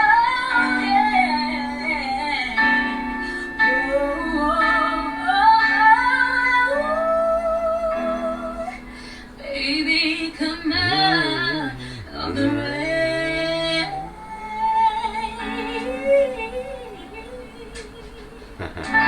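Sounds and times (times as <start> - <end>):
woman singing with vibrato: 0.0 - 18.6
sustained accompaniment: 10.6 - 16.8.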